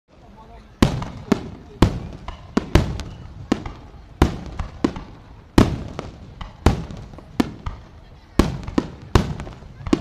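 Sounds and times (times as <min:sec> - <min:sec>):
firework cracks: 0:00.8 - 0:10.0
fireworks booming: 0:00.8 - 0:10.0.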